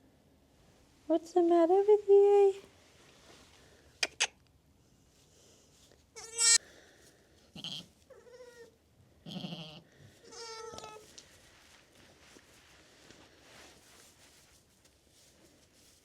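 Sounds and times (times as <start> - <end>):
sheep bleating: 6.2 - 6.6, 7.6 - 8.7, 9.3 - 11.0.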